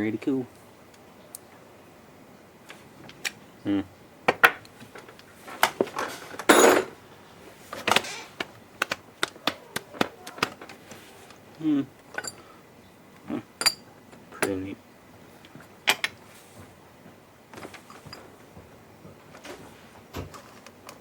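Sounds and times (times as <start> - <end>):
metal parts clinking: 12.1 - 12.4.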